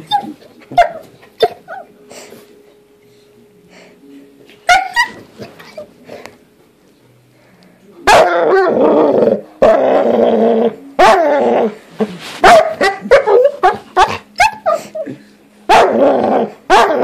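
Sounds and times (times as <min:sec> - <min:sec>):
dog barking: 0:04.7 - 0:05.2, 0:08.1 - 0:08.7, 0:12.4 - 0:14.8, 0:15.7 - 0:16.0, 0:16.7 - 0:17.0.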